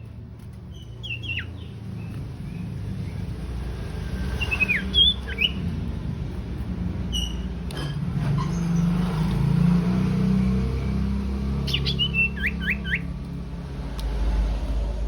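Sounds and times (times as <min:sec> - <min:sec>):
bird calling with whistled notes: 0:00.7 - 0:03.3, 0:04.2 - 0:05.9, 0:11.5 - 0:13.2.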